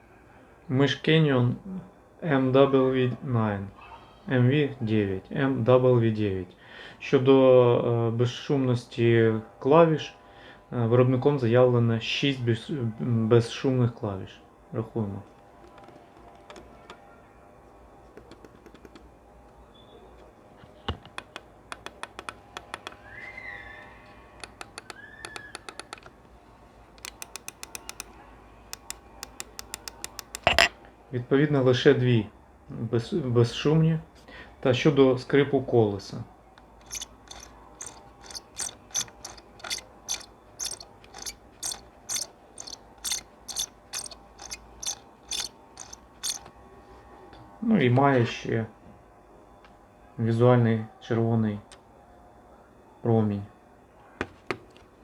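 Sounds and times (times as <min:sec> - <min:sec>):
mouse scroll wheel squeaking: 0:27.0 - 0:28.1, 0:28.8 - 0:30.7, 0:36.8 - 0:46.5.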